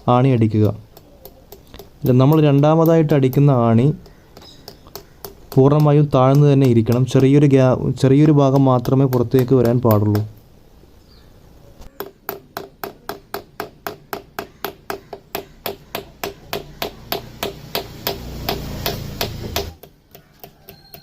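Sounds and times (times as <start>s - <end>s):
hammer driving nail into wood: 0.9s - 7.4s, 11.9s - 21.0s.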